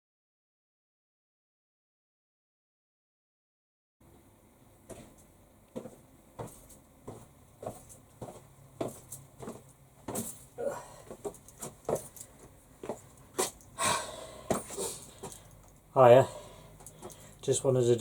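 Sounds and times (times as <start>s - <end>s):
footsteps: 4.8s - 13.7s, 14.4s - 15.8s.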